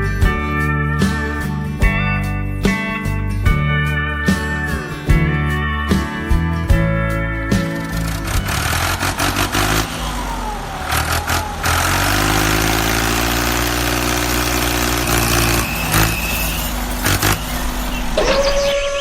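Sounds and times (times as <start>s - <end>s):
engine humming: 4.6s - 19.0s.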